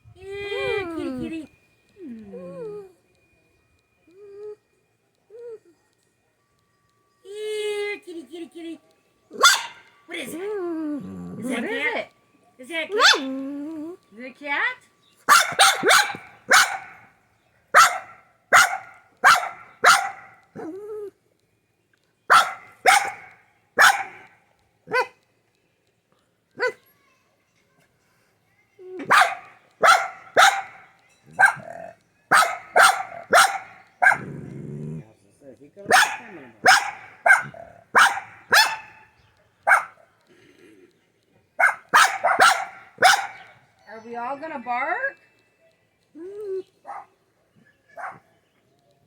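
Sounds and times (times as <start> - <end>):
dog barking: 9.4 - 9.9, 13.0 - 13.3, 15.3 - 17.1, 17.8 - 20.7, 22.3 - 24.3, 24.9 - 25.2, 26.6 - 26.8, 29.0 - 34.4, 35.9 - 39.1, 39.7 - 40.0, 41.6 - 43.6, 46.9 - 47.2, 48.0 - 48.3
dog whining: 10.5 - 11.8, 17.8 - 21.2, 28.8 - 35.1, 36.0 - 39.1, 46.2 - 47.0.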